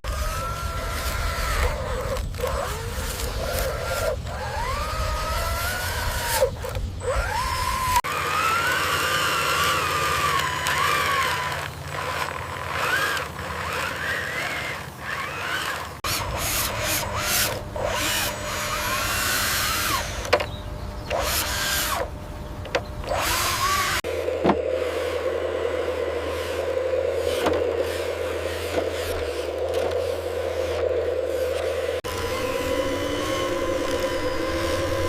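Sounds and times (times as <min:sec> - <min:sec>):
small electric motors whining: 0:00.0 - 0:35.0.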